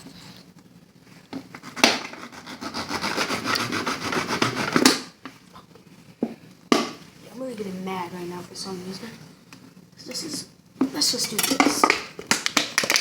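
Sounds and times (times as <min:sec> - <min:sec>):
knife sawing plastic bottle: 0:01.5 - 0:05.1.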